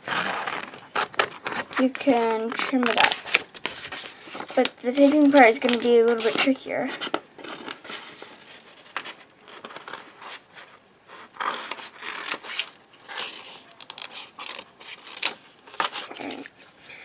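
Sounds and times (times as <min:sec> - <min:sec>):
sticky tape tearing: 0:00.0 - 0:08.0, 0:11.3 - 0:16.5
paper rustling and crinkling: 0:00.0 - 0:16.9.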